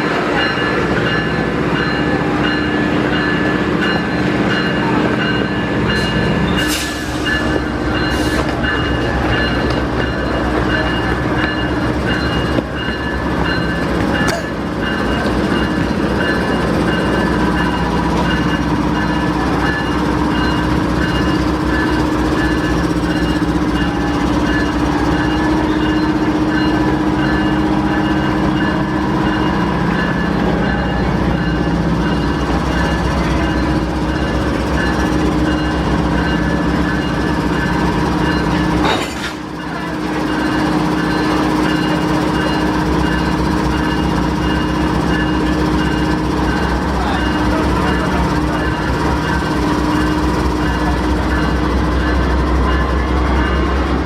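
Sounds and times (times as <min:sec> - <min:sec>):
locomotive engine drone: 0:00.0 - 0:54.0.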